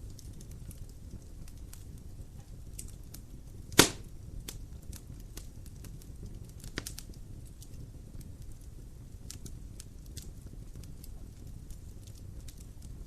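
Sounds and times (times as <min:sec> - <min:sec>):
fire popping: 0:00.0 - 0:13.0
wood fire crackling: 0:00.0 - 0:13.0.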